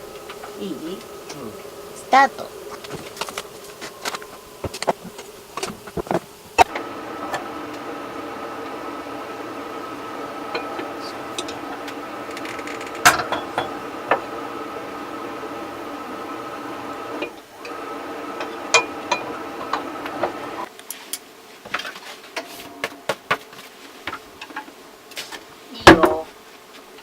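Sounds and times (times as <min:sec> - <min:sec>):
buzzing electric hum: 0:00.0 - 0:20.7.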